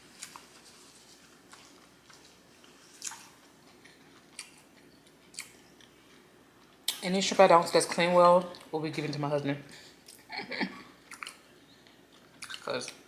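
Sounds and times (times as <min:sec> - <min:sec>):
person chewing food: 0:00.1 - 0:07.0, 0:11.0 - 0:13.0.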